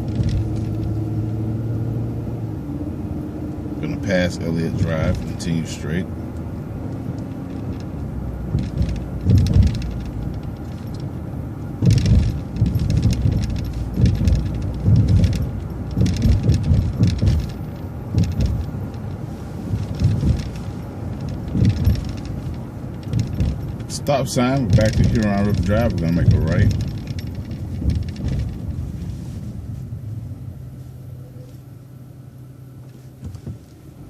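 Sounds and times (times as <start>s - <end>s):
rattles and knocks: 0.0s - 1.4s, 4.8s - 5.6s, 6.9s - 29.4s, 33.2s - 33.7s
bus engine and road rumble: 0.0s - 34.0s.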